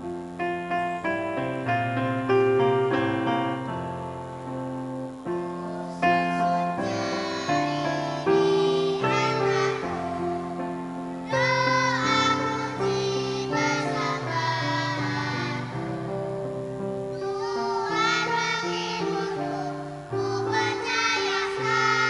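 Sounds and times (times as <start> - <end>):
keyboard playing hymn chords: 0.0 - 22.0
children's choir singing: 5.3 - 22.0.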